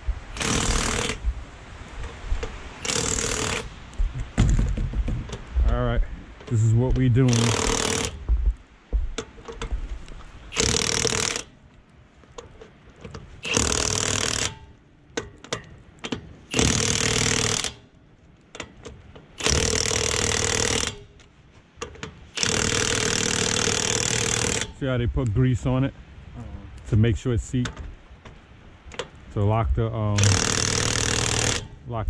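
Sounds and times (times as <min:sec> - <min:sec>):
impact wrench hammering: 0:00.4 - 0:01.2, 0:02.8 - 0:03.7, 0:10.6 - 0:11.5, 0:13.4 - 0:17.8, 0:19.4 - 0:21.0, 0:21.8 - 0:24.8, 0:30.2 - 0:31.7
small metallic clicks: 0:09.2 - 0:24.8.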